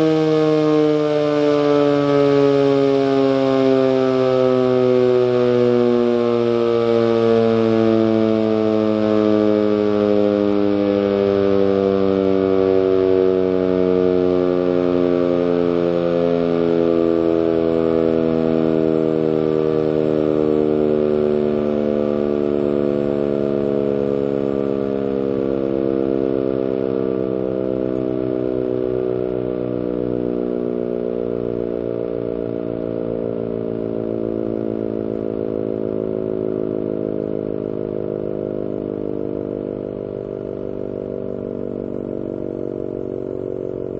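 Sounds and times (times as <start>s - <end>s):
warning siren steady tone: 0.0s - 43.9s.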